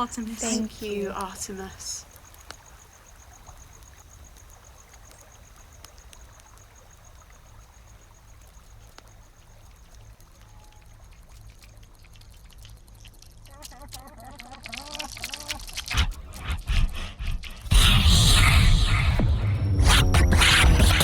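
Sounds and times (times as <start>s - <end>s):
water drips: 0.0s - 16.7s
trickling water: 0.0s - 17.6s
low rumble: 15.8s - 21.0s.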